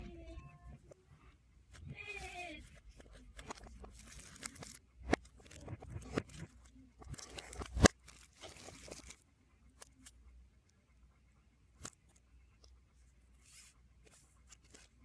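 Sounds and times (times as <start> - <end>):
reversed plastic and paper rustling: 1.7 - 9.2, 13.4 - 15.0.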